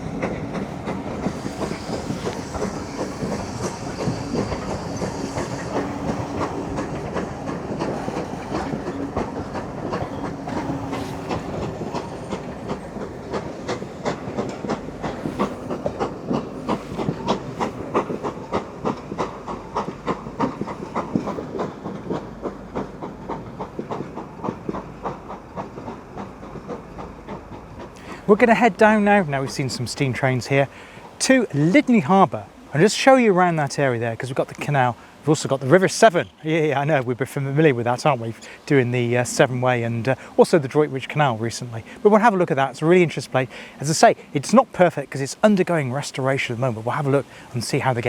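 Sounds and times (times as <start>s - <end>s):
train wheels clacking on rails: 0.0s - 48.0s
hiss burst: 0.7s - 8.9s.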